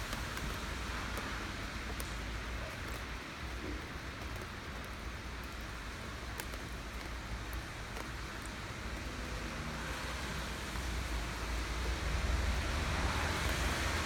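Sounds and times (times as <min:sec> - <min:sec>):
raindrops ticking: 0:00.0 - 0:14.0
steady rain: 0:00.0 - 0:14.0.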